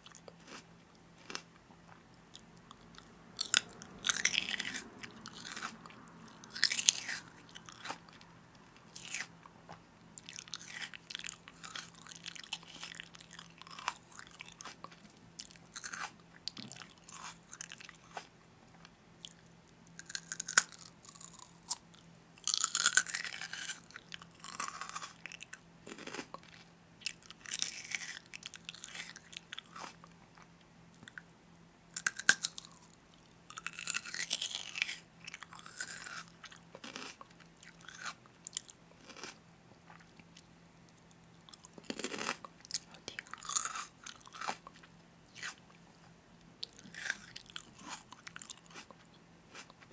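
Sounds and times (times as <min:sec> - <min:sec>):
person chewing crunchy food: 0:00.0 - 0:18.3, 0:19.2 - 0:31.2, 0:32.0 - 0:49.9.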